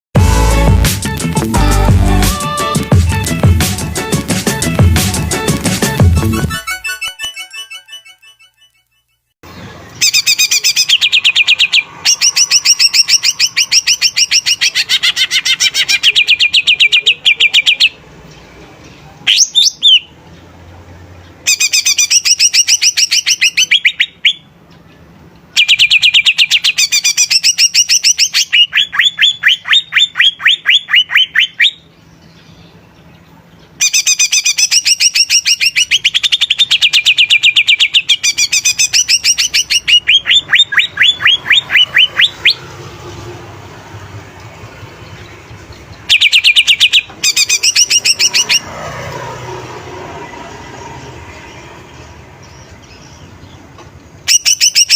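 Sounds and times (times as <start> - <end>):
bird chattering song: 6.7 - 20.6, 21.2 - 42.7, 44.7 - 48.8, 51.9 - 54.9.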